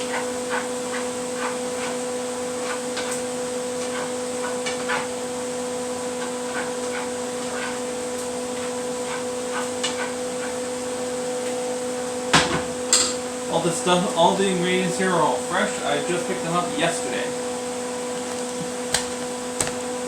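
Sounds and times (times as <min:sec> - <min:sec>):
kitchen appliance humming: 0:00.0 - 0:20.0.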